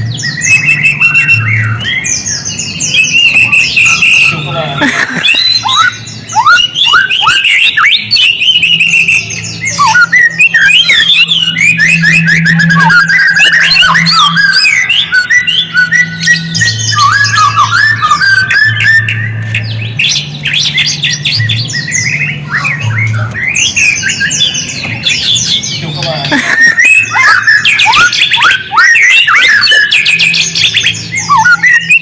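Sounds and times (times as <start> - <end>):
songbird whistling song: 0.0 - 32.0
low steady hum: 8.0 - 27.7.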